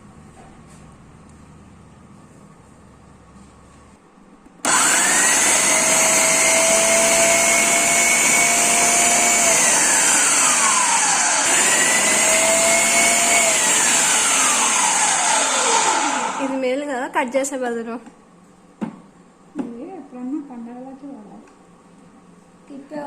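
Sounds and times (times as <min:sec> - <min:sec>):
mixer grinder motor whining: 0:04.6 - 0:16.8.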